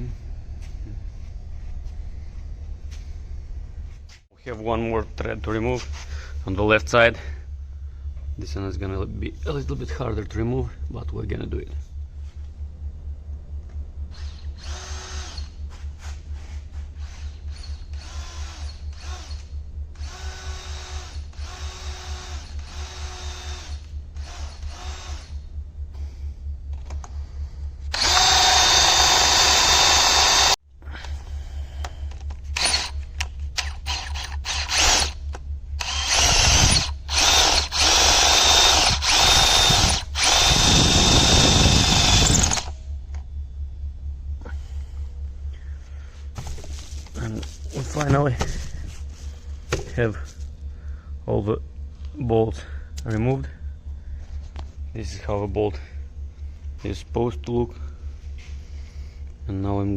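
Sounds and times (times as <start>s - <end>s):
power drill drilling metal: 17.0s - 19.4s, 20.0s - 25.4s, 27.9s - 30.6s, 32.6s - 33.0s, 33.6s - 35.2s, 35.8s - 42.8s.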